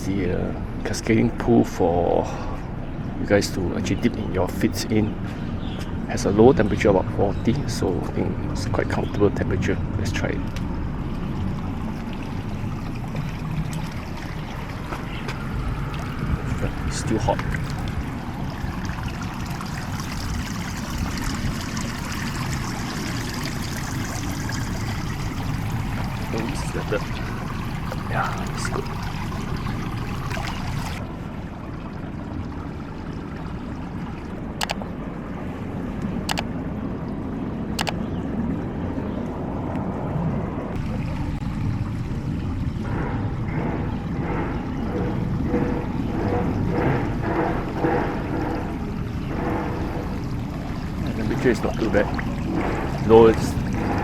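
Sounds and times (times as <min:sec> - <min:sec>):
wind buffeting microphone: 0:02.6 - 0:54.0
water trickling over stone: 0:10.4 - 0:34.4, 0:47.0 - 0:54.0
sharp clicks: 0:37.8 - 0:38.0.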